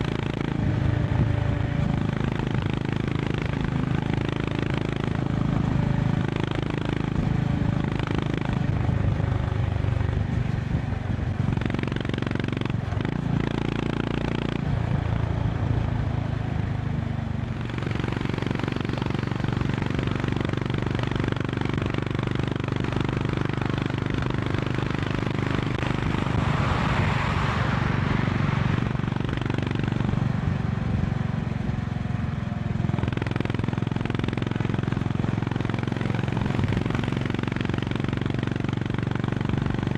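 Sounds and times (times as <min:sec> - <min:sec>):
motorcycle engine running: 0:00.0 - 0:39.9
wind and road noise: 0:00.0 - 0:39.9
broad rush of noise: 0:25.1 - 0:31.0.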